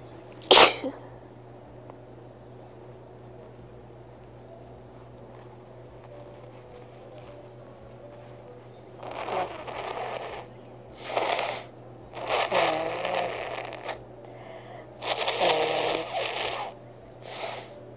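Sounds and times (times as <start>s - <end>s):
person blowing congested nose: 9.0s - 14.0s, 15.0s - 17.8s.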